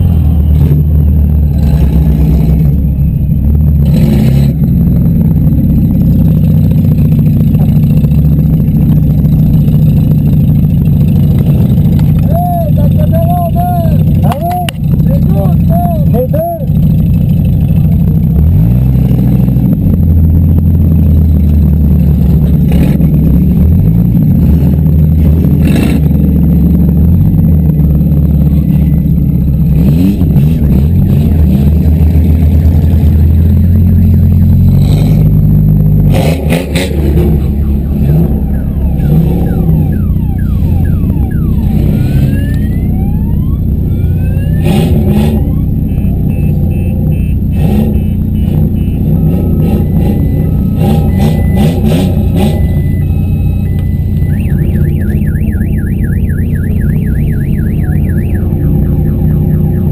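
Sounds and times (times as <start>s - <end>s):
car engines revving: 0.0s - 59.9s.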